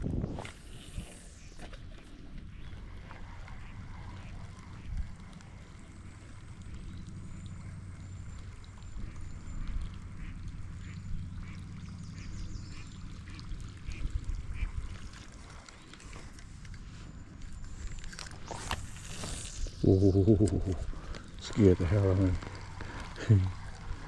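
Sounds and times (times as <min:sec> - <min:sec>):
steady low rumble: 0:00.0 - 0:24.0
lure plopping and gurgling: 0:17.4 - 0:21.6.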